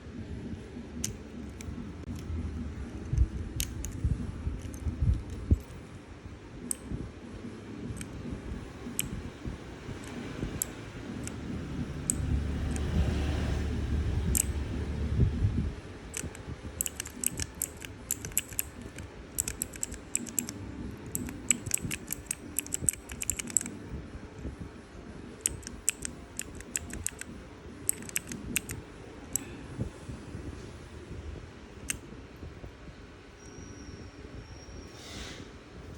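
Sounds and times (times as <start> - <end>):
low rumble of handling noise: 0.0 - 33.4
clicky key presses: 2.9 - 5.8, 14.3 - 14.6, 16.1 - 23.8, 25.4 - 27.3, 27.9 - 29.5.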